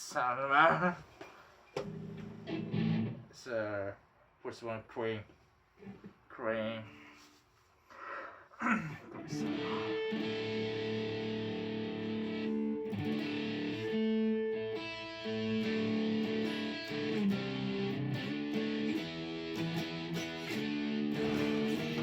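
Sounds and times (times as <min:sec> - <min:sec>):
electric guitar chords: 0:01.9 - 0:03.3, 0:09.1 - 0:22.0.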